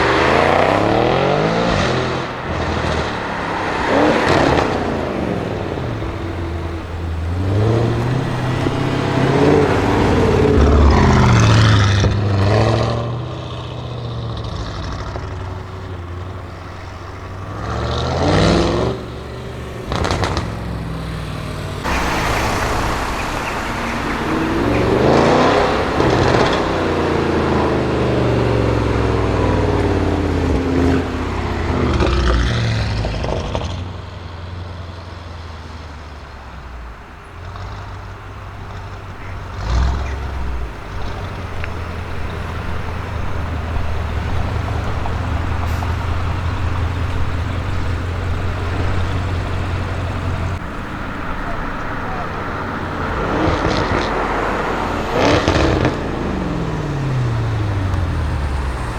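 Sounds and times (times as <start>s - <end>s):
car engine revving: 0.0s - 58.9s
exhaust crackles: 0.0s - 58.9s
low engine drone: 15.2s - 31.8s.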